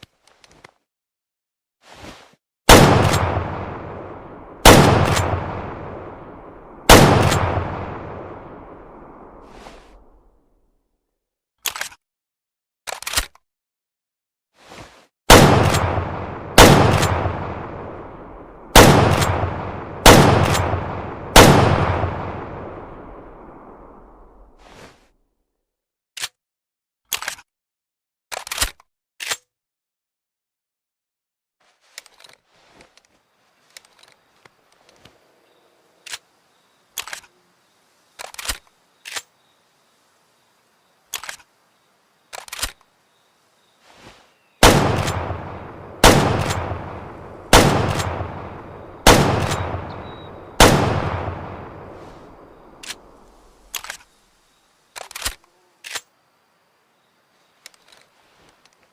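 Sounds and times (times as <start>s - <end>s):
rifle shots echoing: 2.7s - 9.4s, 15.3s - 24.0s, 44.6s - 53.6s.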